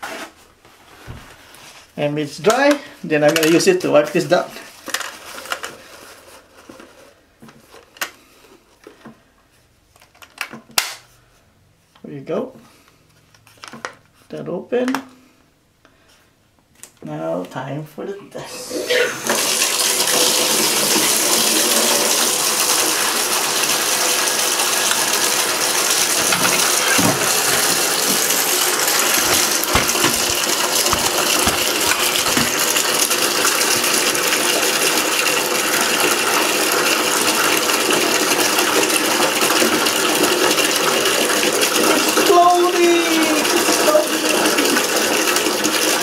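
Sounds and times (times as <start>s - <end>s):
water running into basin: 18.5s - 46.0s
plastic knocking in water: 26.1s - 33.0s.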